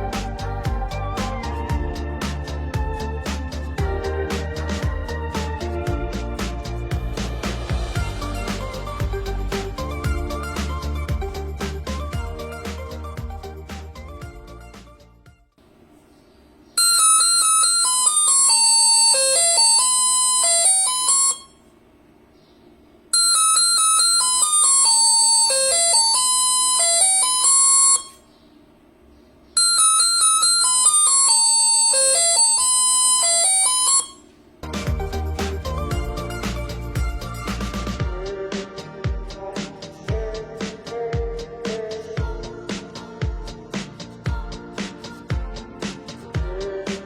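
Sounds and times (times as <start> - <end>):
door alarm beeping tune: 16.8 - 21.6, 23.2 - 28.2, 29.6 - 34.3.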